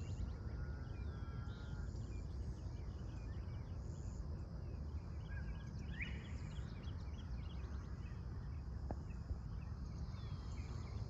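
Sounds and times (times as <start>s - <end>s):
high insect drone: 0.0s - 11.0s
songbirds chirping: 0.0s - 11.0s
rising bird call: 0.4s - 2.0s.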